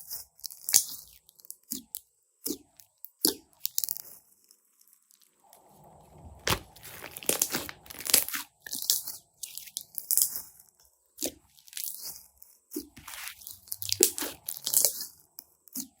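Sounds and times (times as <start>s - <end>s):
slime crackling and squelching: 6.4s - 16.0s.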